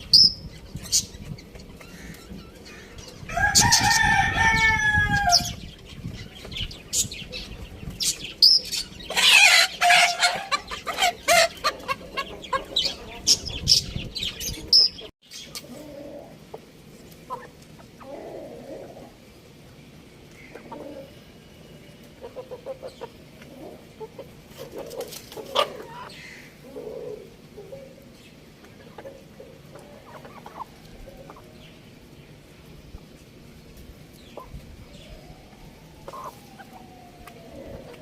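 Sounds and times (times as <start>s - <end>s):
rooster crowing: 3.3s - 5.6s
chicken clucking: 8.4s - 13.7s, 14.5s - 19.1s, 20.5s - 21.2s, 22.0s - 31.6s, 36.1s - 38.0s.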